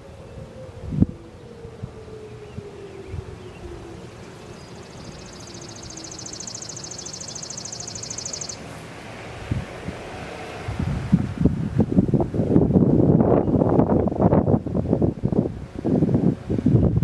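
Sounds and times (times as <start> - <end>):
electronic warning siren: 0.0 - 8.7
low wind noise: 0.0 - 17.0.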